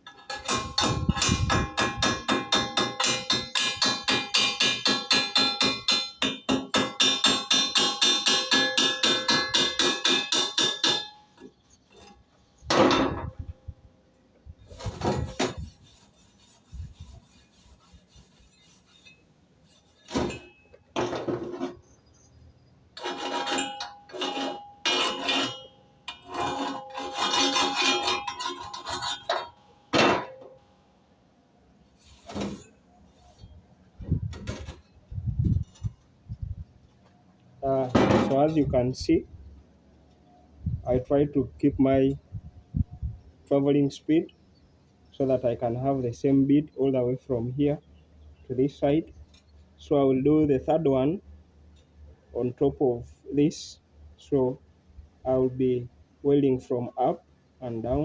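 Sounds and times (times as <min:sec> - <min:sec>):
metallic scrapes: 0:14.6 - 0:22.0, 0:23.0 - 0:30.6, 0:31.8 - 0:36.0.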